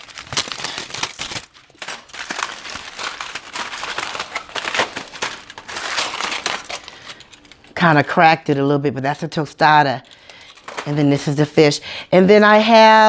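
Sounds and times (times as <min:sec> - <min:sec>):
food wrapping crinkling: 0:00.0 - 0:07.9, 0:10.0 - 0:11.0.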